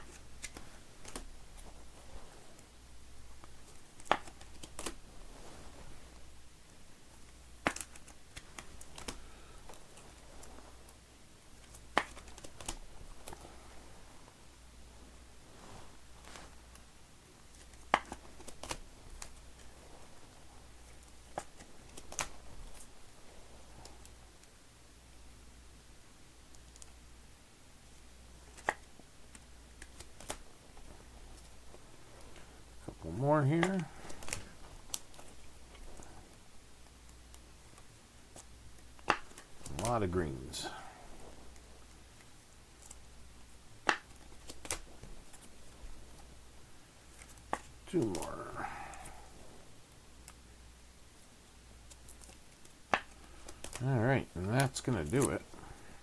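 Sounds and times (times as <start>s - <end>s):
cards rustling: 0.0s - 2.6s, 3.4s - 5.3s, 7.2s - 11.0s, 11.6s - 13.8s, 17.5s - 24.2s, 28.4s - 36.4s, 37.1s - 43.2s, 43.8s - 46.4s, 47.0s - 49.4s, 51.8s - 56.0s
trading cards clicking on a table: 7.6s - 9.8s.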